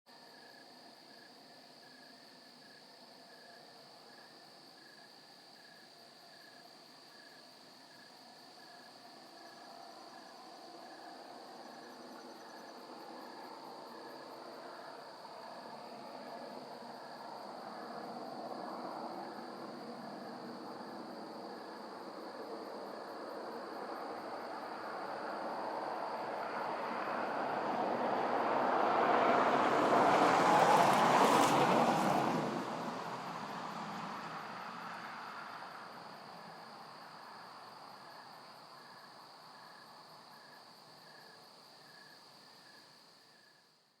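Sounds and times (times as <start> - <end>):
crickets chirping: 0.1 - 44.0
car passing by: 9.1 - 40.3.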